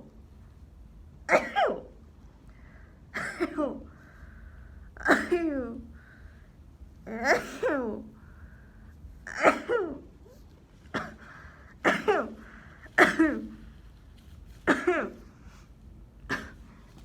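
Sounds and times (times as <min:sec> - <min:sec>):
girl coughing: 0:01.3 - 0:02.0, 0:03.1 - 0:04.0, 0:05.0 - 0:06.0, 0:07.1 - 0:08.1, 0:09.3 - 0:13.6, 0:14.6 - 0:15.3, 0:16.2 - 0:16.8.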